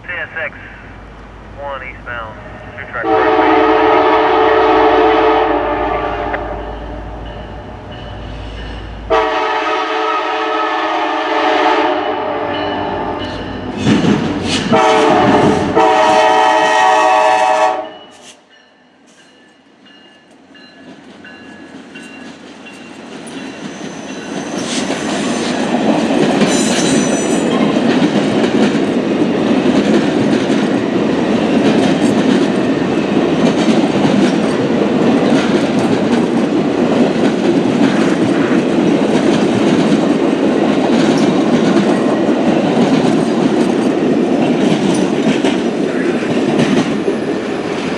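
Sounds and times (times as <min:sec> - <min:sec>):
train wheels rumbling on rails: 0:00.5 - 0:18.4, 0:19.0 - 0:47.9
locomotive horn: 0:02.8 - 0:07.8, 0:09.1 - 0:13.2, 0:14.7 - 0:18.0.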